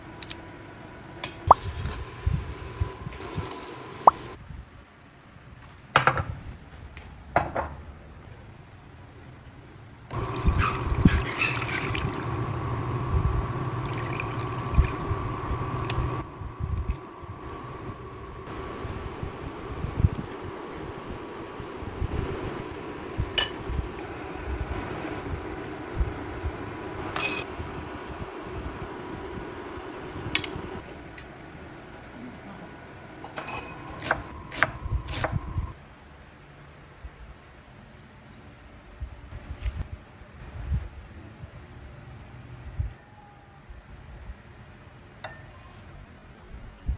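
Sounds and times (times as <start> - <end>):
steady hum: 0.0 - 4.4, 10.1 - 35.8
water pouring: 10.1 - 22.6
utensils knocking and clinking: 27.1 - 27.5.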